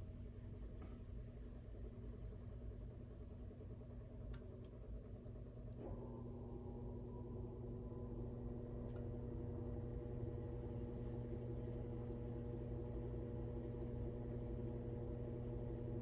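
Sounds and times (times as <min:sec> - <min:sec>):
washing machine running: 0:05.8 - 0:16.0.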